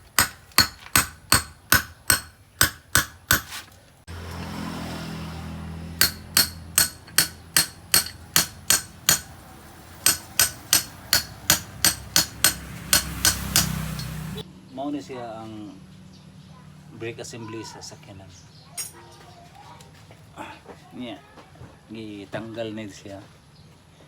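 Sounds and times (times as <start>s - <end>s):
hammer striking metal: 0.0s - 3.6s, 6.0s - 9.4s, 10.0s - 14.4s.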